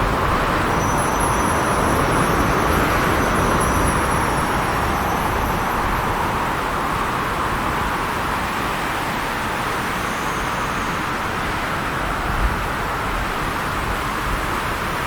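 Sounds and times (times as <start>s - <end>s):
wind blowing: 0.0s - 8.0s
high ringing bells: 0.1s - 7.8s.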